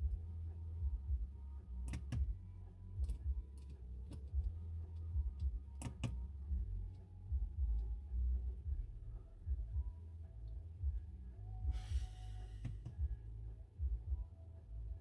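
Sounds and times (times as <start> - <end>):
low uneven rumble: 0.0 - 15.0
dashboard buttons clicking: 1.8 - 2.3, 5.7 - 6.2.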